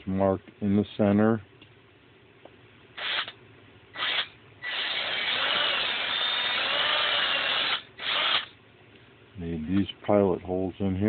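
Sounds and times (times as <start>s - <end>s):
power drill drilling: 3.0s - 3.3s, 4.0s - 8.5s.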